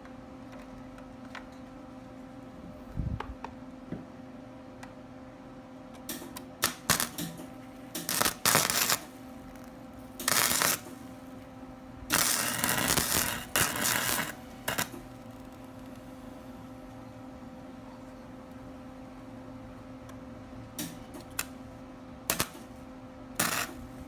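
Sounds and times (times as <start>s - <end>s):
steady electrical hum: 0.0s - 24.0s
welder arc crackling: 6.1s - 16.2s, 22.3s - 22.8s, 23.4s - 24.0s.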